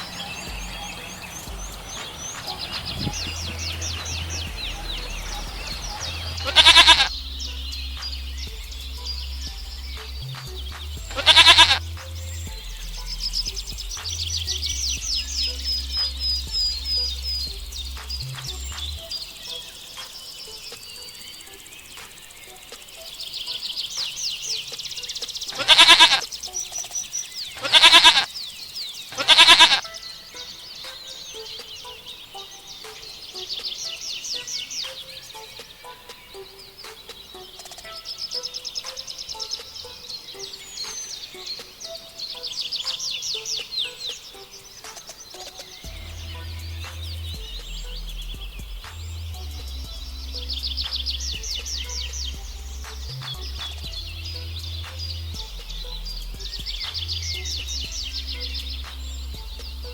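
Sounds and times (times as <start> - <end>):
small birds chirping: 0.0 - 59.9
goat bleating: 6.4 - 7.1, 11.1 - 11.8, 25.6 - 26.2, 27.6 - 28.3, 29.2 - 29.8.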